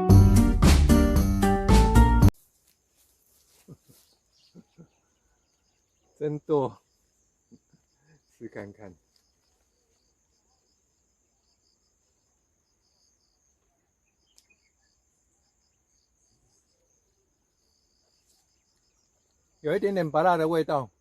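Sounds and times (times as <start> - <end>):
insect chirring: 4.6 - 20.2.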